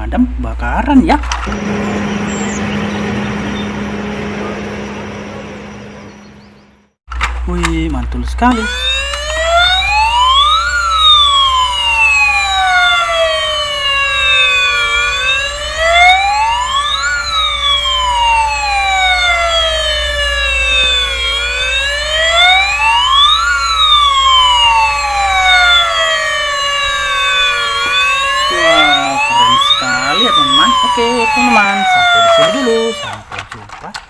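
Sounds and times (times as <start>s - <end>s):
toy siren wailing: 8.5s - 33.3s.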